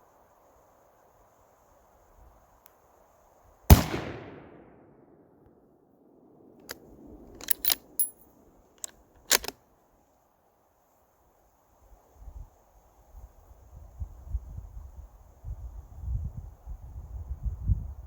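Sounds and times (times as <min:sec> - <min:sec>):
rifle shot: 0:03.7 - 0:05.2
rifle bolt clicking: 0:07.4 - 0:08.2, 0:08.8 - 0:09.6.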